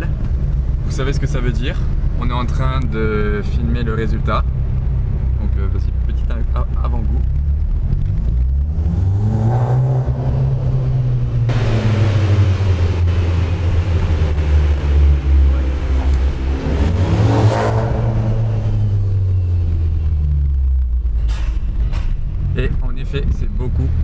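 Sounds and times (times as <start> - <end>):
car engine accelerating hard: 3.8 - 21.0.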